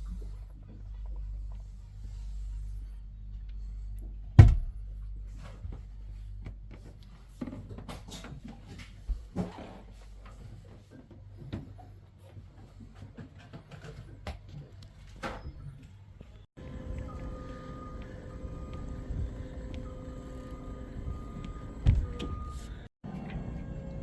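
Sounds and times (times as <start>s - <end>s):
low hum: 16.6s - 24.0s.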